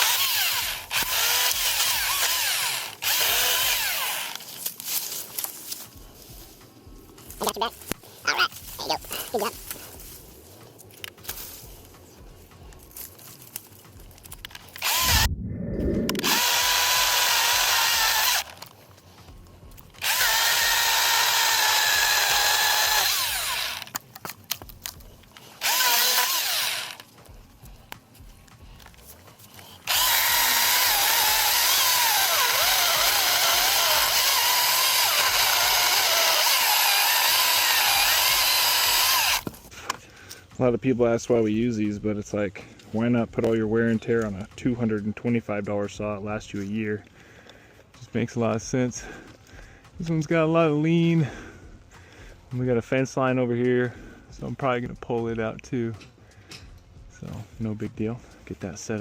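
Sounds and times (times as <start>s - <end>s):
battery chainsaw cutting wood: 0.0s - 4.4s, 14.7s - 15.3s, 16.0s - 18.7s, 20.0s - 27.0s, 29.8s - 39.6s
low thud: 15.1s - 16.4s.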